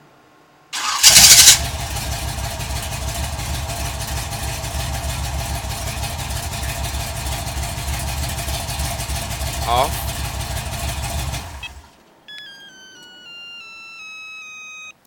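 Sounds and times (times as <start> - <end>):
car engine starting and idling: 0.8 - 12.1.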